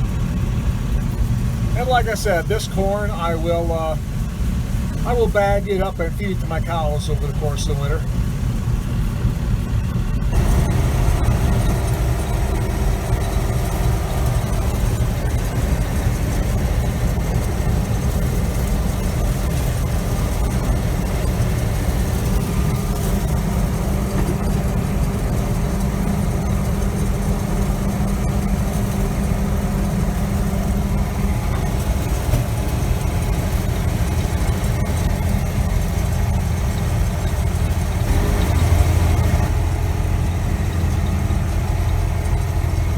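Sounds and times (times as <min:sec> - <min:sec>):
combine harvester running: 0:00.0 - 0:42.9
machinery noise: 0:10.2 - 0:42.9.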